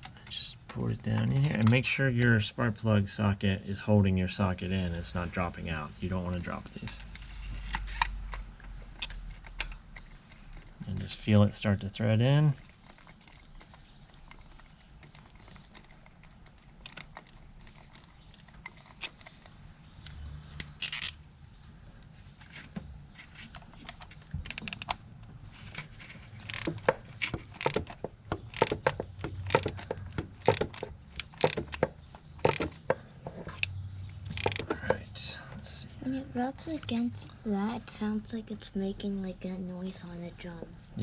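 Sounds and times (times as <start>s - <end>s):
socket ratchet clicking: 20.0s - 21.2s, 24.4s - 25.0s, 26.5s - 33.0s, 34.3s - 34.8s.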